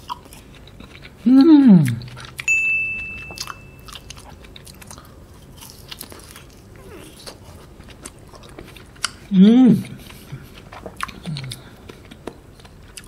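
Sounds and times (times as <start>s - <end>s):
person chewing ice lolly: 0.0s - 13.0s
high ringing tone: 2.5s - 4.2s.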